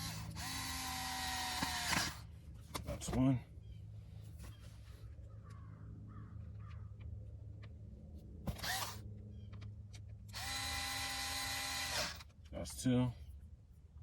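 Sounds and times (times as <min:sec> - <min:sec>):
electric screwdriver motor: 0:00.0 - 0:02.2, 0:08.5 - 0:09.0, 0:10.3 - 0:12.3.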